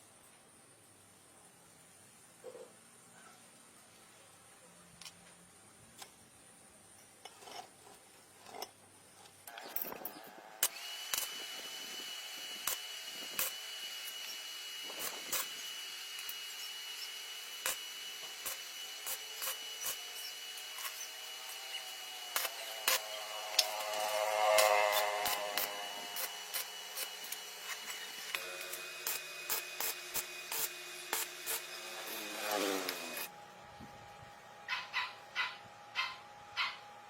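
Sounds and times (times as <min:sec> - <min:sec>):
electric motor whining: 0:09.5 - 0:33.4.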